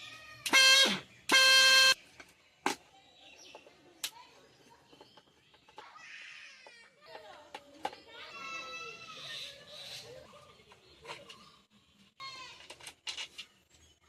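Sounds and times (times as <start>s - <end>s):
faint outdoor background: 0.0s - 14.0s
loud horn honks: 0.5s - 2.0s.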